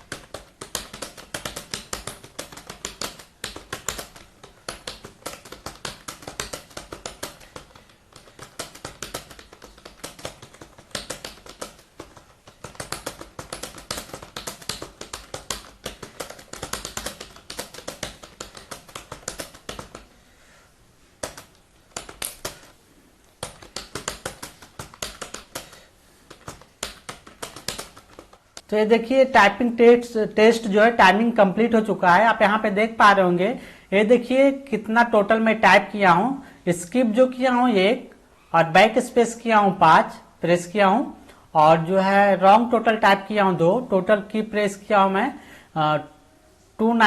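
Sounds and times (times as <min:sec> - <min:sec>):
fast keyboard typing: 0:00.0 - 0:20.1, 0:21.2 - 0:22.8, 0:23.4 - 0:28.4.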